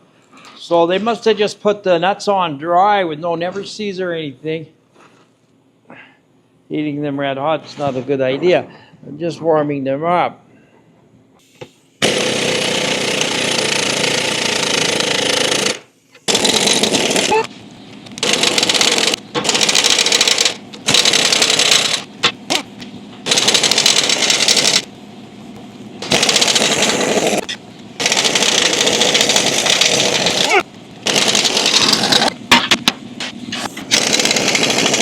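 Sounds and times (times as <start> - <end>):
impact wrench hammering: 12.0 - 17.5, 18.2 - 24.9, 26.0 - 33.0, 33.9 - 35.0.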